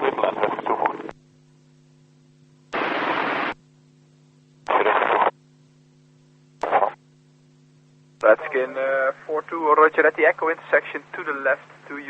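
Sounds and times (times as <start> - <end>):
faint low hum: 0.0 - 12.0
radio static hiss bursts: 2.7 - 3.6, 4.6 - 5.4, 6.6 - 7.1, 8.2 - 12.0.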